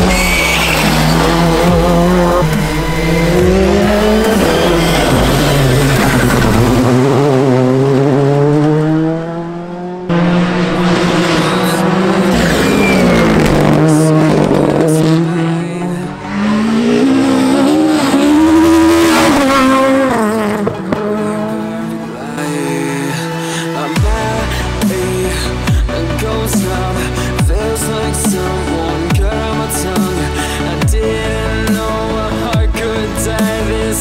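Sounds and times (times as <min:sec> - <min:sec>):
rally cars revving past: 0:00.0 - 0:24.0.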